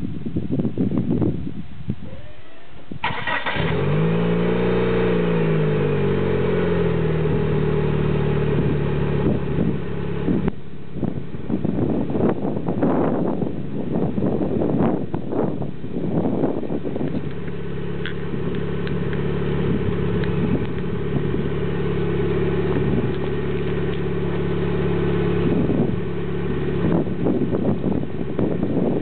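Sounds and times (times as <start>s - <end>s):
turbocharged car engine running: 3.6s - 12.4s, 15.8s - 29.0s.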